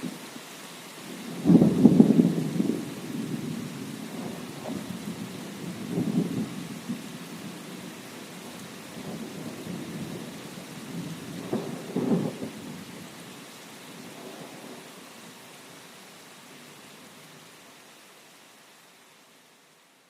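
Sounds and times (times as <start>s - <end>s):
steady rain: 0.0s - 20.0s
distant thunder rumbles: 1.3s - 8.0s, 8.9s - 12.8s.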